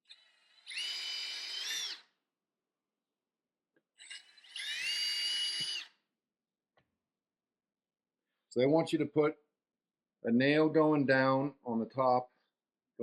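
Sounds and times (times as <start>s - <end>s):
power drill drilling into wood: 0.0s - 2.1s, 4.0s - 6.0s.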